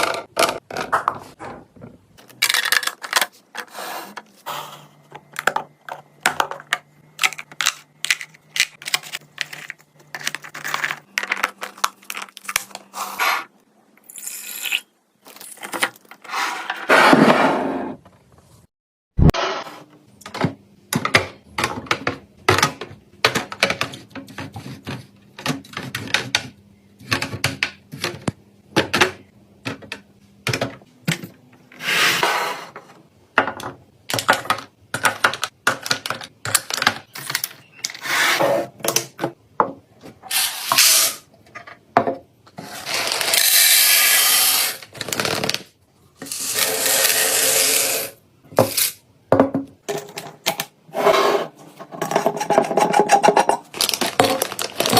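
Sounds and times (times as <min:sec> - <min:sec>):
containers clicking and knocking: 0:05.1 - 0:12.7, 0:33.4 - 0:37.9, 0:51.7 - 0:54.9
steady packaging noise: 0:05.2 - 0:13.3, 0:53.7 - 0:54.9.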